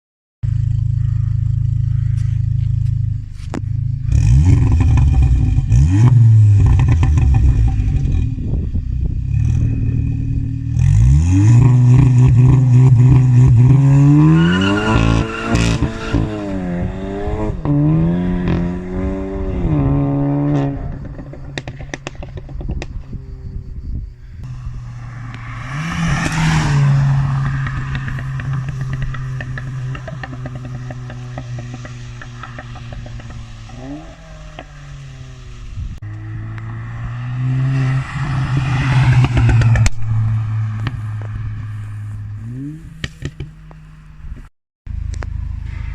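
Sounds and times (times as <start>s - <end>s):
car engine idling and revving: 0.4s - 45.9s
exhaust pops and crackles: 2.0s - 9.6s, 20.4s - 23.8s, 24.4s - 36.7s, 38.7s - 45.9s.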